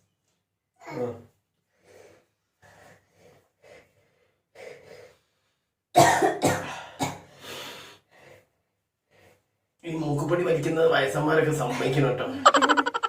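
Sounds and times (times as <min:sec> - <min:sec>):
person sniffing: 0:06.6 - 0:08.5.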